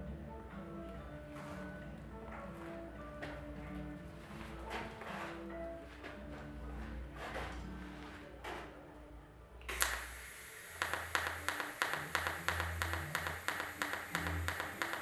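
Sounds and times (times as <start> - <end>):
welding arc hissing and ticking: 9.7 - 15.0.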